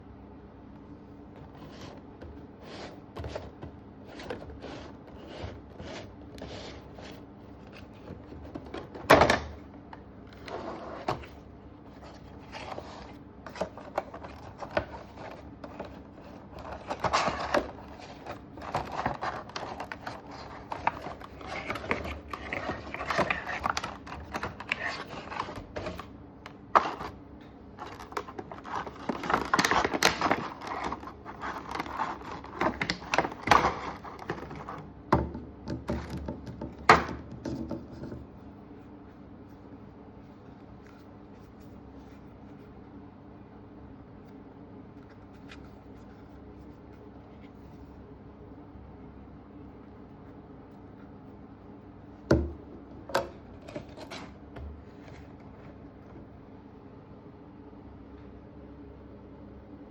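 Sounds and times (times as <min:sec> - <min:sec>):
scraping and crinkling: 0:01.4 - 0:09.6, 0:10.3 - 0:34.9, 0:53.1 - 0:56.3.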